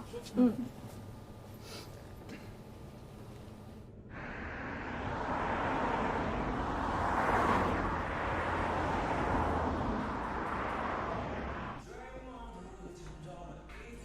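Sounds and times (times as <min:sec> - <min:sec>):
vehicle rushing noise with hum: 0:03.2 - 0:11.8.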